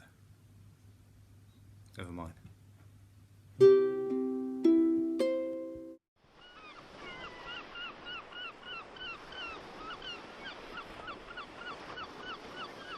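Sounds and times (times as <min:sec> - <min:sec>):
ukulele chord: 0:03.6 - 0:06.0.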